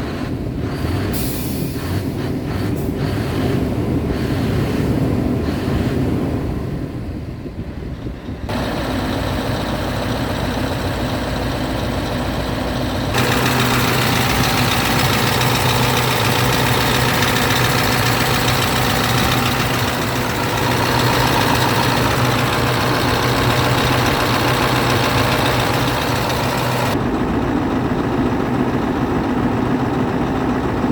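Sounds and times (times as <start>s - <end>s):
diesel truck engine idling: 7.5s - 30.9s.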